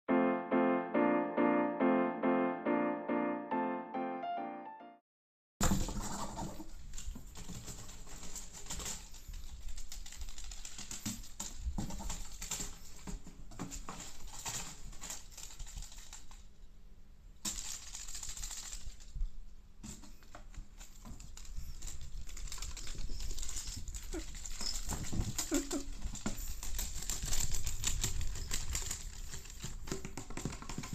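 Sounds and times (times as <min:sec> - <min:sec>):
crinkly toy rustling: 0:06.4 - 0:16.6, 0:17.4 - 0:19.4, 0:20.1 - 0:30.9.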